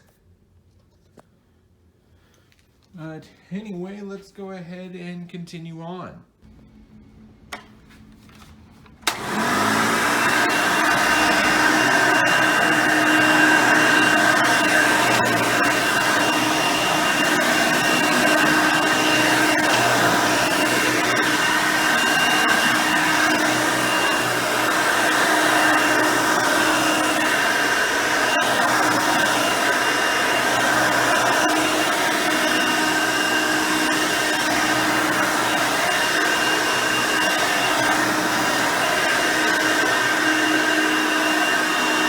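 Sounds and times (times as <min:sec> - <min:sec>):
vacuum cleaner running with whine: 0:06.5 - 0:42.0
vacuum switch click: 0:09.0 - 0:09.4.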